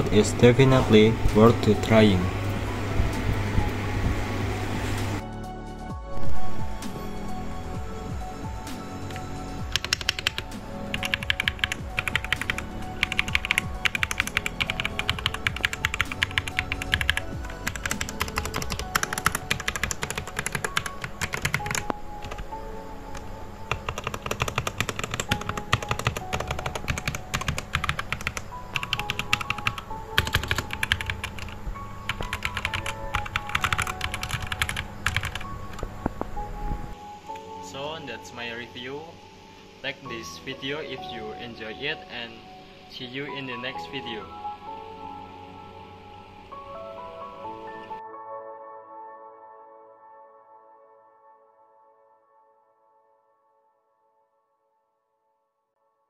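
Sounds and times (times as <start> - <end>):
background music: 0.0 - 54.4
mechanical keyboard typing: 9.7 - 22.4, 23.7 - 35.8.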